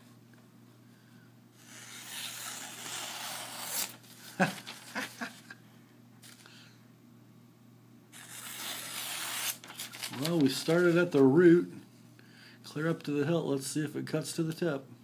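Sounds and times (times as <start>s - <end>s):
knife slicing paper: 1.6s - 5.0s, 8.2s - 11.2s.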